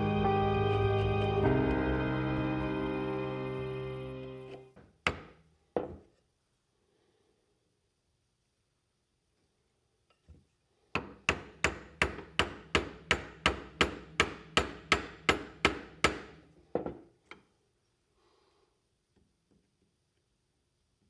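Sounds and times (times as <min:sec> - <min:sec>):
hammer blows: 0:00.0 - 0:04.6.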